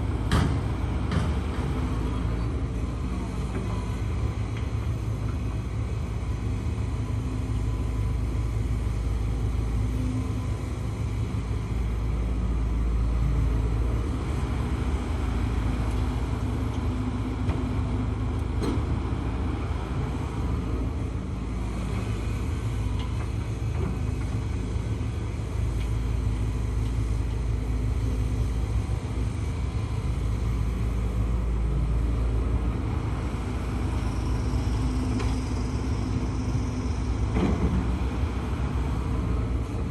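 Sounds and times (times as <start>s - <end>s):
excavator diesel engine rumbling: 0.0s - 39.9s.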